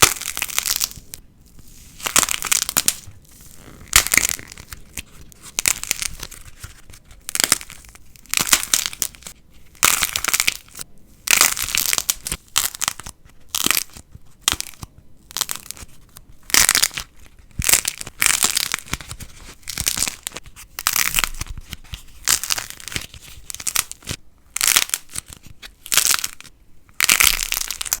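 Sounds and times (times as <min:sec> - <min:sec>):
slime crackling when squeezed: 0:22.2 - 0:28.0.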